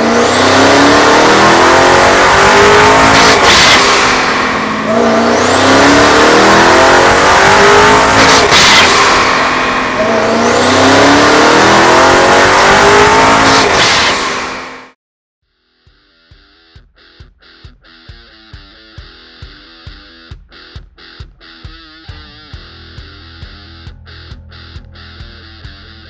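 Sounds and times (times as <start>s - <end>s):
car engine at full throttle: 0.0s - 15.0s
high supercharger whine: 0.0s - 15.0s.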